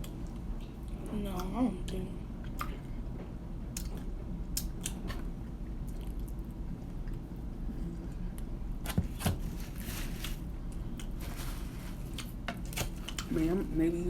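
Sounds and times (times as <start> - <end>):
chewing: 3.7 - 7.3.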